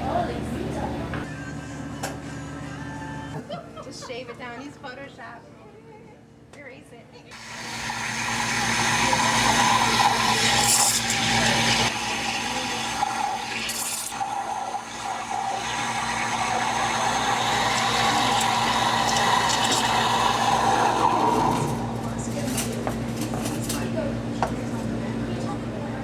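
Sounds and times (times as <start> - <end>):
espresso machine hum: 7.3 - 26.0
hissing gurgling liquid: 7.4 - 22.4.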